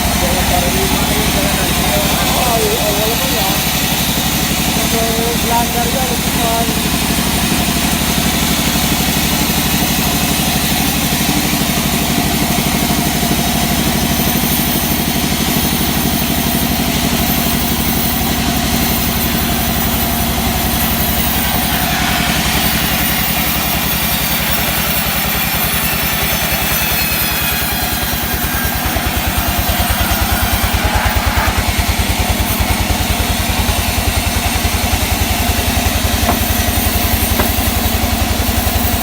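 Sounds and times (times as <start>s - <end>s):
sawmill engine running: 0.0s - 39.0s.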